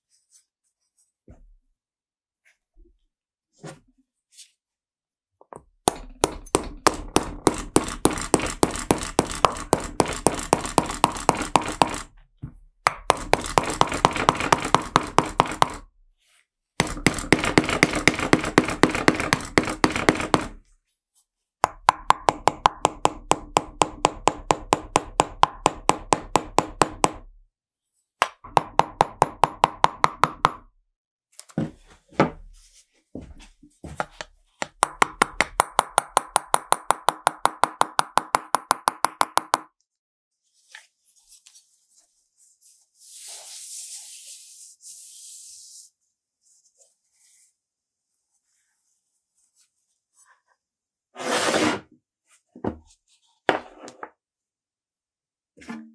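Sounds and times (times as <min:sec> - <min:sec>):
hammer tapping sheet metal: 0:05.8 - 0:12.1, 0:16.8 - 0:20.6, 0:34.6 - 0:39.7.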